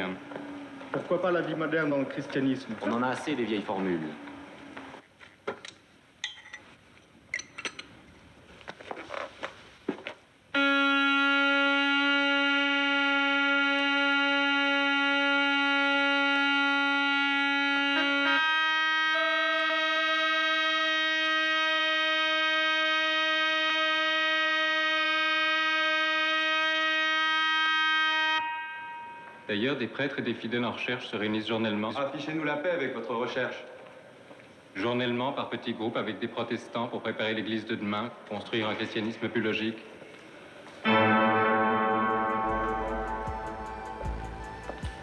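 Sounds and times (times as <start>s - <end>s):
organ holding a loud note: 40.8s - 45.0s.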